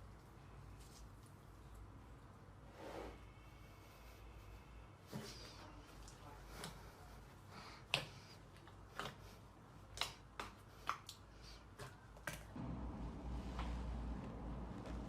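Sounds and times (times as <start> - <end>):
low hum: 12.5 - 15.0.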